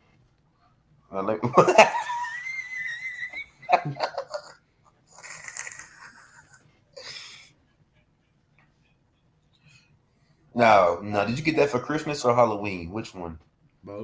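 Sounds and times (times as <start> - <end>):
person squealing and wheezing: 2.1 - 3.6.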